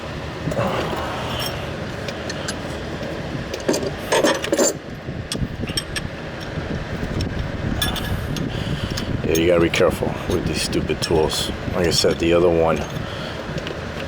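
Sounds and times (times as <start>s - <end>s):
metal hand tools clinking: 7.8s - 8.2s.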